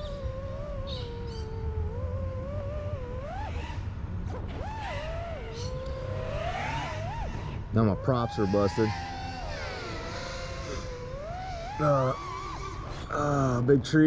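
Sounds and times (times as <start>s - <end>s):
drone motors whining: 0.0s - 14.0s.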